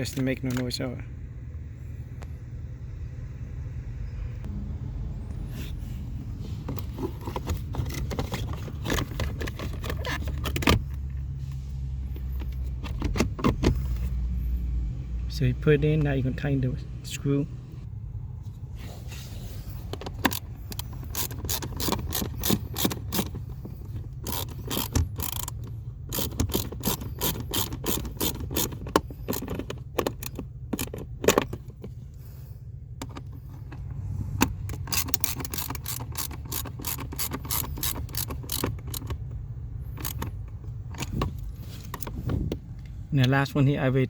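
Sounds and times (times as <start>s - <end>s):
ratchet wrench clicking: 20.2s - 31.0s, 34.5s - 40.5s.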